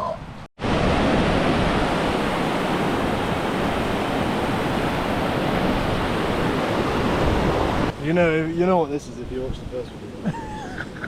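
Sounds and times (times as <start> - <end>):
wind buffeting microphone: 0.7 - 8.0.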